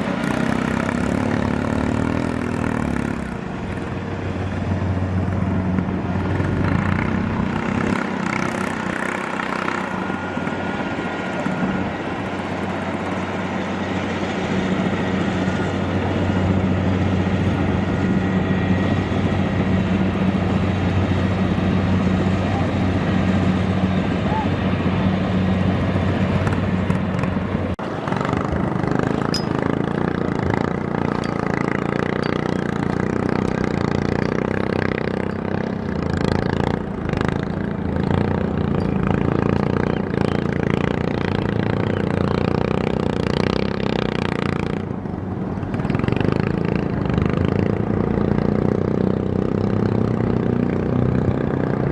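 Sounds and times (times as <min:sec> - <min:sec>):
combine harvester engine running: 0:00.0 - 0:51.9.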